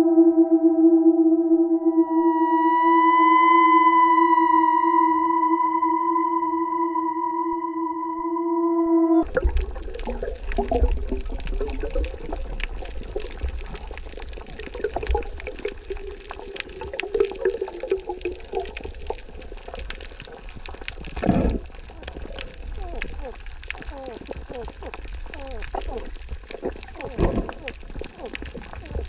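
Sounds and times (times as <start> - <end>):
rush of bubbles: 9.2 - 29.0
underwater rumble and crackling: 9.2 - 29.0.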